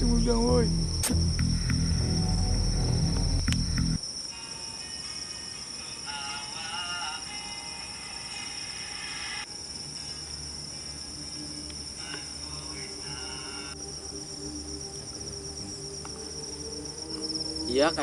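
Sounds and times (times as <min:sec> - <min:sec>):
low droning background music: 0:00.0 - 0:04.0, 0:10.0 - 0:18.0
crickets chirping: 0:00.0 - 0:18.0.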